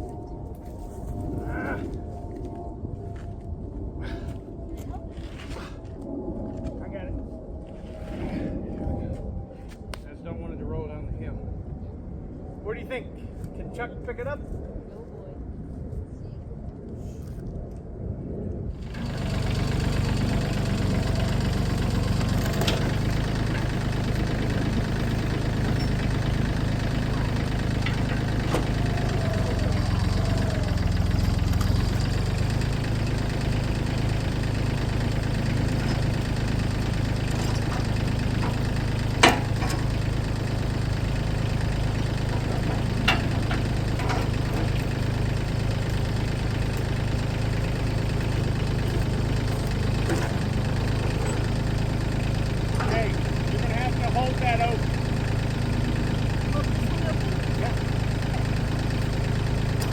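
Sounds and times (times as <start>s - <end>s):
heavy machine engine running: 18.8s - 59.9s.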